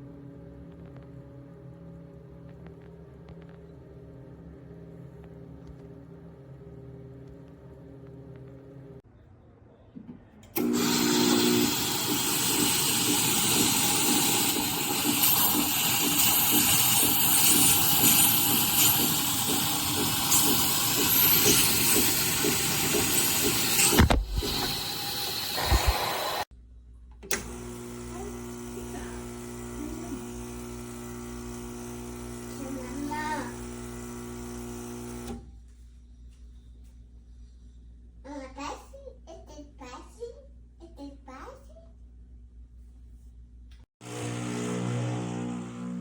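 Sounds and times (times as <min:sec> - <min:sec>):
steady machine hum: 0:00.0 - 0:09.0, 0:10.6 - 0:26.4, 0:27.4 - 0:35.3, 0:44.0 - 0:46.0
espresso machine hissing: 0:10.6 - 0:26.5, 0:27.4 - 0:35.3, 0:44.0 - 0:46.0.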